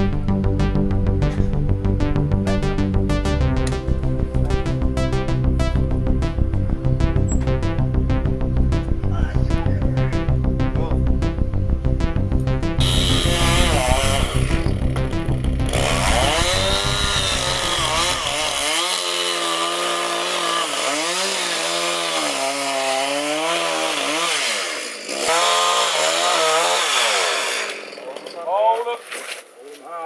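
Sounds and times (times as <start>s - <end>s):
chainsaw revving: 12.8s - 28.5s.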